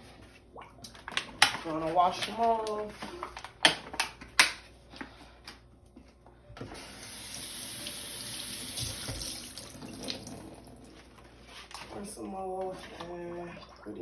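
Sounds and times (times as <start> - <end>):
water running into sink: 6.7 - 10.9
kitchen tap turned on: 6.8 - 10.4.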